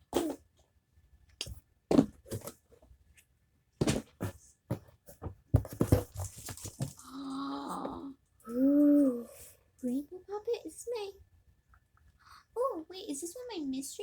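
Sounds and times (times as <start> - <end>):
plastic packaging rustling: 5.6 - 7.0.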